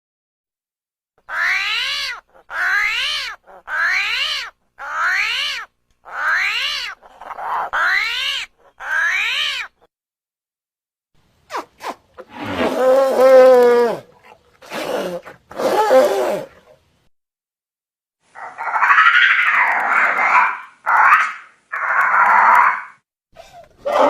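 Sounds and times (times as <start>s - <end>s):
shrill beast scream: 18.4s - 23.0s, 23.8s - 24.0s.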